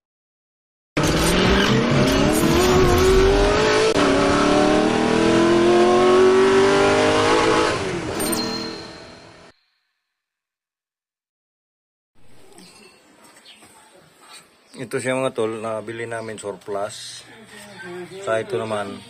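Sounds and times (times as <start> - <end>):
car engine accelerating: 1.0 - 8.4.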